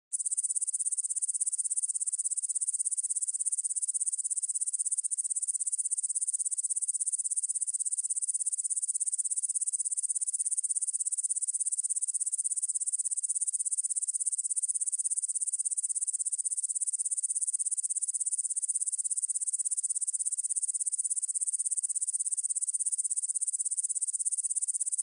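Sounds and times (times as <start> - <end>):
crickets chirping: 0.2 - 0.9.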